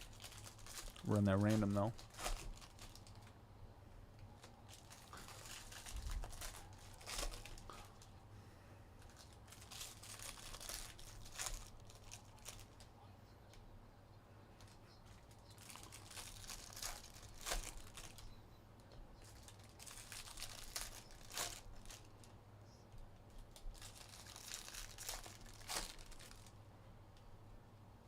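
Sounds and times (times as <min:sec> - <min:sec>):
foil wrappers crinkling and tearing: 0:00.0 - 0:03.4, 0:04.3 - 0:08.1, 0:09.0 - 0:12.9, 0:14.6 - 0:18.4, 0:19.2 - 0:22.3, 0:23.3 - 0:26.6.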